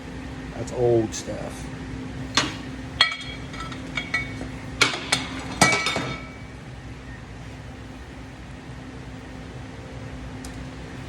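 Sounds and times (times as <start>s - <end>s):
metal tools clinking: 2.4s - 6.5s.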